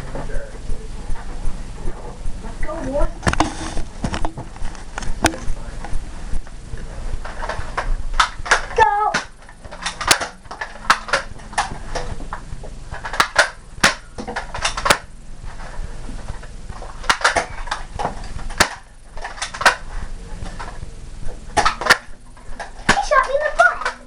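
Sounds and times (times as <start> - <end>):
toy blasters priming and firing: 7.3 - 12.0, 13.0 - 15.1, 17.0 - 19.9, 21.6 - 24.0.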